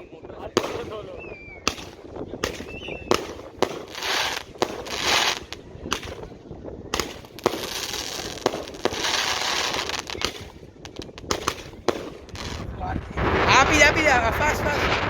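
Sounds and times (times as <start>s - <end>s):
fireworks crackling hiss: 0.4s - 6.3s, 7.0s - 15.0s
firecracker bangs: 0.4s - 15.0s.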